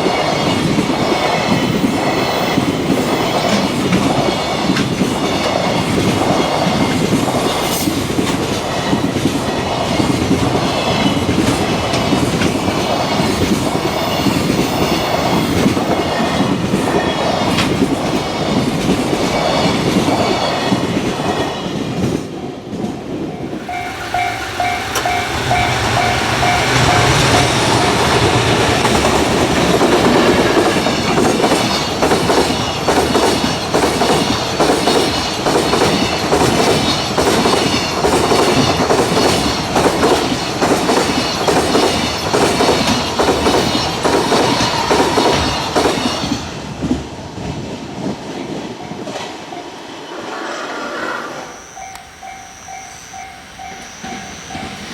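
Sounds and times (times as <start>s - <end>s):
train wheels clacking over rail joints: 0.0s - 22.9s, 23.5s - 47.0s
level crossing warning bell: 23.3s - 31.2s, 51.4s - 54.9s.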